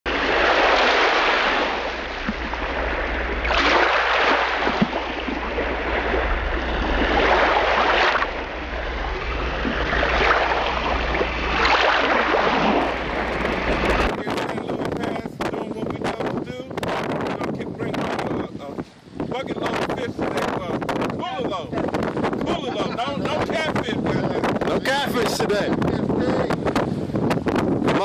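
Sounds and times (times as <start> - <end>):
surf waves breaking: 0.1 - 28.0
low rumble: 4.5 - 14.3.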